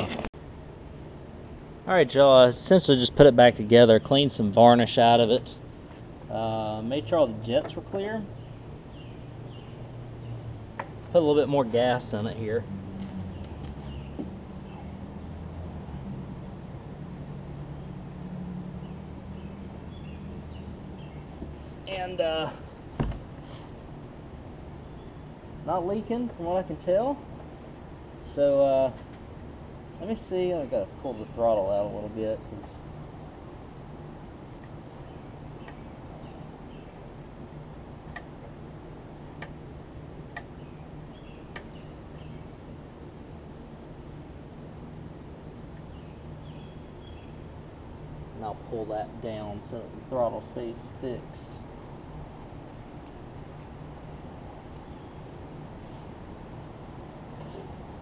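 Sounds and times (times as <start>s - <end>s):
low background noise: 0.0s - 58.0s
small bird chirping: 1.4s - 1.9s, 7.7s - 11.2s, 13.1s - 23.4s, 24.2s - 26.0s, 29.4s - 30.2s.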